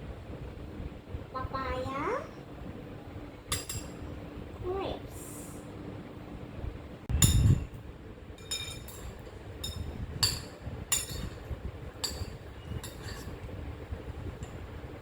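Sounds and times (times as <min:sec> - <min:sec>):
spoon clinking on bowl: 0:08.4 - 0:13.5.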